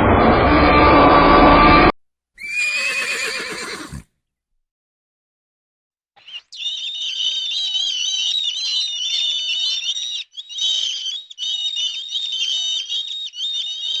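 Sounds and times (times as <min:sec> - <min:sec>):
small birds chirping: 0:06.2 - 0:14.0.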